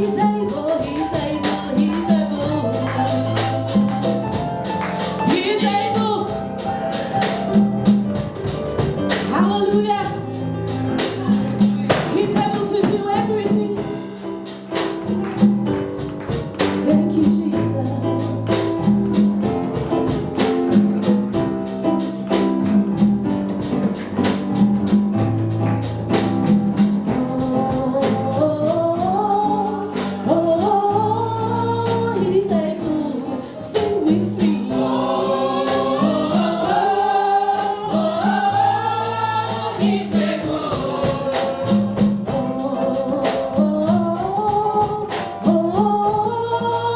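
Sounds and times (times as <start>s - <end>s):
people singing: 0.0s - 7.6s, 27.0s - 46.9s
drums and tambourine: 0.0s - 17.4s, 33.8s - 46.2s
bass line: 0.0s - 33.0s
gospel band playing: 0.0s - 46.9s.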